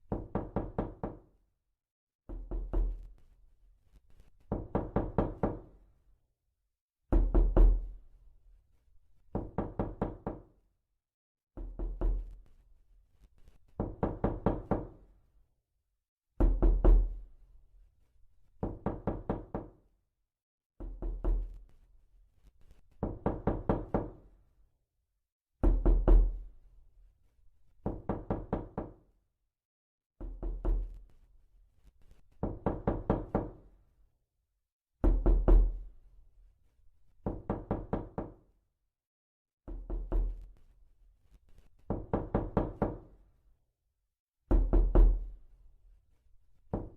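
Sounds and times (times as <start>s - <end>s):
fast knocking on a door: 0.0s - 1.3s, 2.3s - 3.0s, 4.5s - 5.7s, 7.1s - 7.9s, 9.3s - 10.6s, 11.6s - 12.3s, 13.8s - 15.0s, 16.4s - 17.2s, 18.6s - 19.8s, 23.0s - 24.2s, 25.6s - 26.4s, 27.8s - 29.0s, 30.2s - 31.0s, 32.4s - 33.6s, 35.0s - 35.9s, 37.2s - 38.4s, 39.7s - 40.5s, 41.9s - 43.1s, 44.5s - 45.3s.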